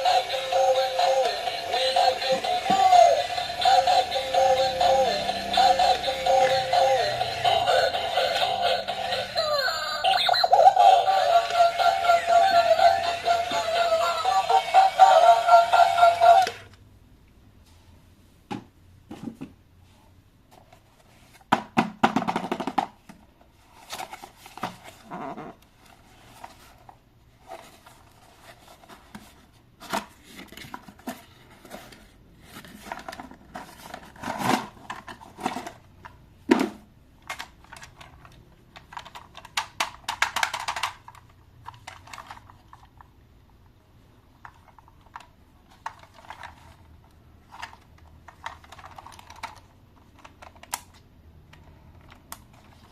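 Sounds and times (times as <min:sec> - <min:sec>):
packaging handled with clicks and rustles: 0:37.2 - 0:43.3, 0:44.4 - 0:52.9.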